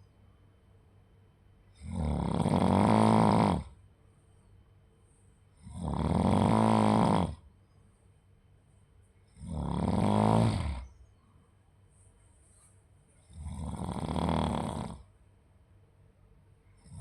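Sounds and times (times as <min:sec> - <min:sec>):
person snoring: 0:01.8 - 0:03.8, 0:05.6 - 0:07.4, 0:09.3 - 0:10.9, 0:13.2 - 0:15.1, 0:16.8 - 0:17.0.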